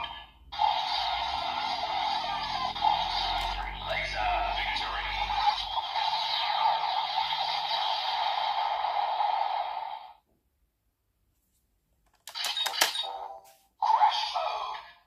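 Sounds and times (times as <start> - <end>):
hissing electronic energy effect: 0.6 - 10.0.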